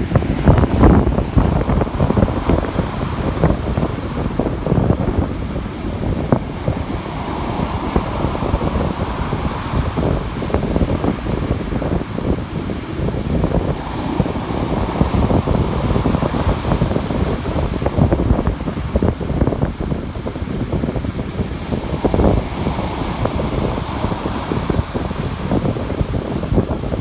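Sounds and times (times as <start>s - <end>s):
wind buffeting microphone: 0.0s - 27.0s.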